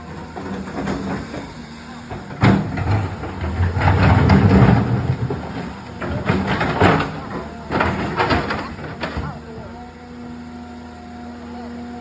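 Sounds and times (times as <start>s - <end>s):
excavator engine running: 0.0s - 12.0s
loud rumbling: 2.0s - 9.8s.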